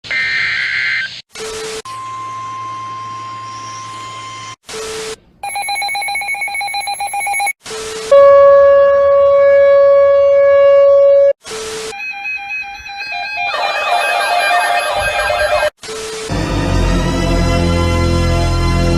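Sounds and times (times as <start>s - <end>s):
electronic alert tones: 12.0s - 15.7s.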